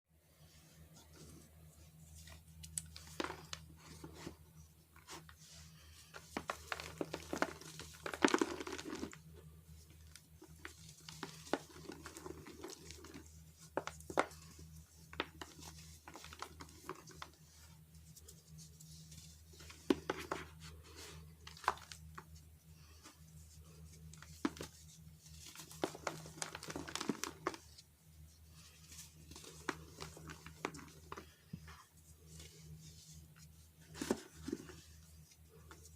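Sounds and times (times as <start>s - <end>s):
baking soda crunching and crumbling: 2.6s - 4.3s, 5.1s - 23.0s, 23.6s - 27.8s, 28.5s - 33.2s.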